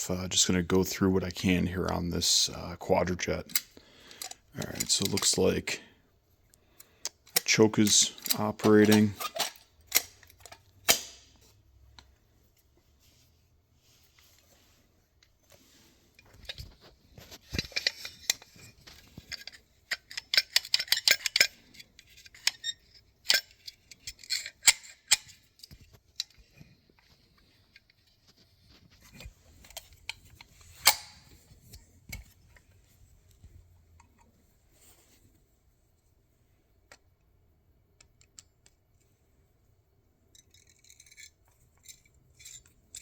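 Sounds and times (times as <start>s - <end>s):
metallic clicks and rattles: 1.8s - 5.8s, 6.7s - 12.2s, 15.2s - 32.8s, 40.3s - 43.0s.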